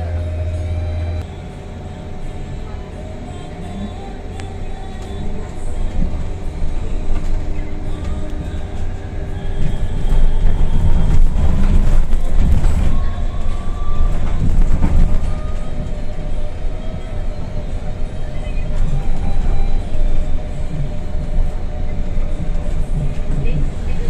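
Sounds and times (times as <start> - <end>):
bus road rumble: 0.0 - 24.0.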